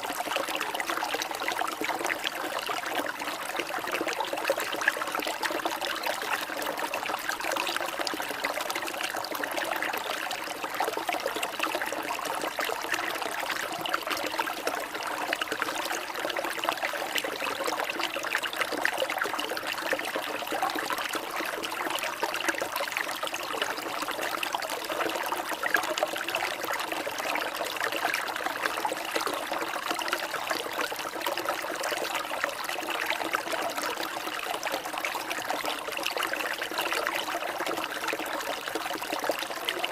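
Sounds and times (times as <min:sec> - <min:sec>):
water trickling and splashing: 0:00.0 - 0:39.9.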